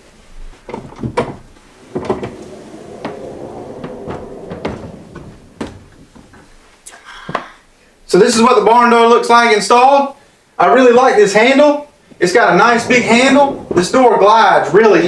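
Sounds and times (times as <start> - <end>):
door rollers rumbling on track: 0.8 - 6.6, 11.1 - 15.0.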